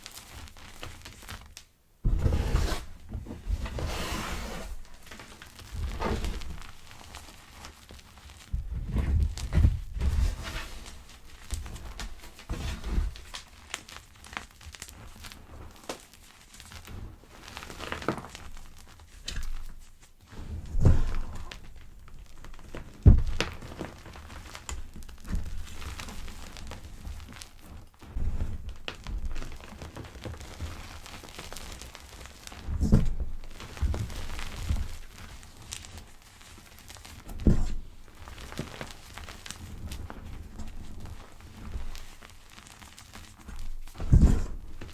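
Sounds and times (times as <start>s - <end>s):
dull thumps: 22.8s - 23.7s, 43.4s - 44.9s.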